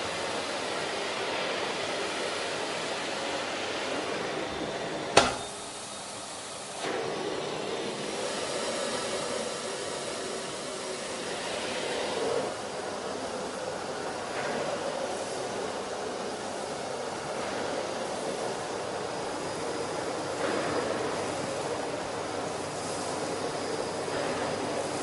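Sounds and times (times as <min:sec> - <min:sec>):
vacuum cleaner running: 0:00.0 - 0:25.0.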